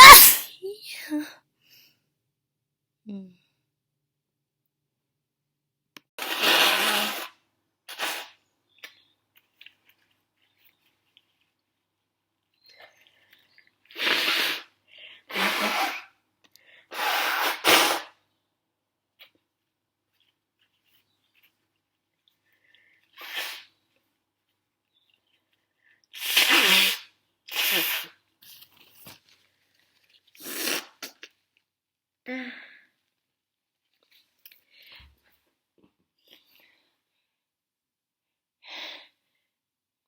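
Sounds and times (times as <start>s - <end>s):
faint sniffles: 0.0s - 0.5s, 13.9s - 18.2s, 26.1s - 29.1s
forceful blast of air through nose: 0.0s - 0.5s, 6.2s - 8.4s, 13.9s - 14.7s, 15.3s - 16.0s, 16.9s - 18.2s, 26.2s - 28.1s
stifled sneeze: 0.0s - 0.5s, 15.3s - 16.2s, 16.9s - 18.2s, 26.2s - 28.2s.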